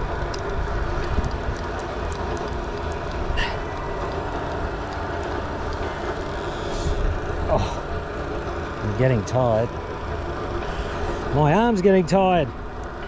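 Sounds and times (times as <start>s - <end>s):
low rumble: 0.0s - 11.7s.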